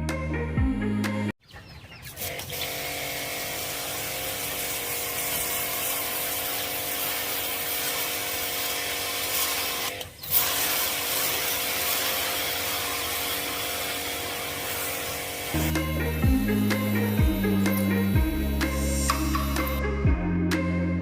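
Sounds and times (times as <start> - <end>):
water spraying hiss: 3.2 - 15.7.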